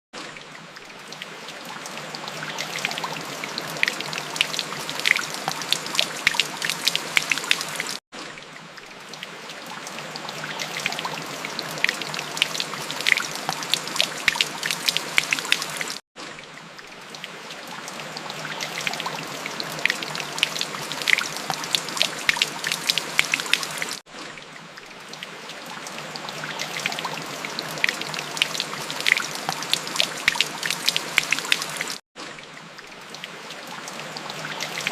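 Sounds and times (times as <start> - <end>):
rain drops pattering: 0.2 - 34.9.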